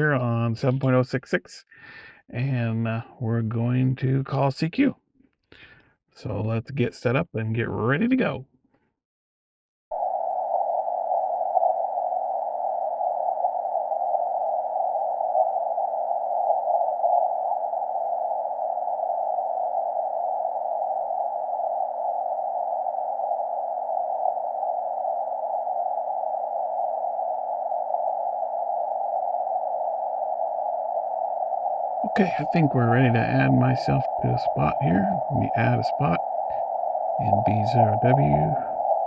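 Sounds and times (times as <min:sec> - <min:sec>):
faint steady hum: 0:00.0 - 0:04.9, 0:10.0 - 0:39.0
radio receiver static hiss: 0:26.8 - 0:39.0.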